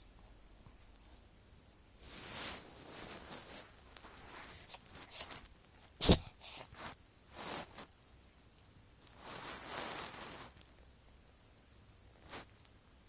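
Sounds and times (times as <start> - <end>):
soft noisy puffs: 2.0 - 8.0
cat sneezing: 4.2 - 5.4, 6.0 - 6.8.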